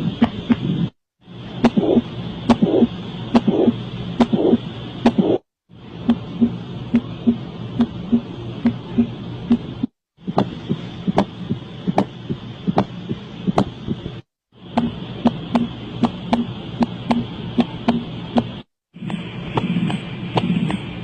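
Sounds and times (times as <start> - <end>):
heartbeat clicks through stethoscope: 1.6 - 5.4, 7.8 - 14.1.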